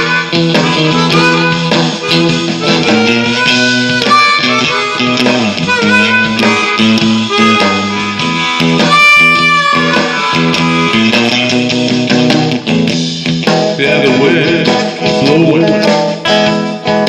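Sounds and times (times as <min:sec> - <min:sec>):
blues guitar: 0:00.0 - 0:17.0
harmonica bent notes: 0:00.0 - 0:17.0.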